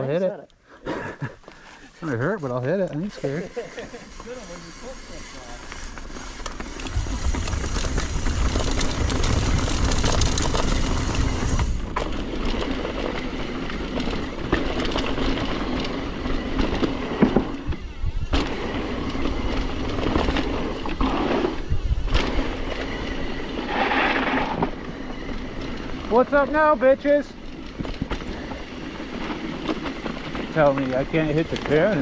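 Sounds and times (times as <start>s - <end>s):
bike tyres on dirt: 1.2s - 32.0s
bike chain rattling: 2.0s - 32.0s
wind buffeting microphone: 6.1s - 26.1s.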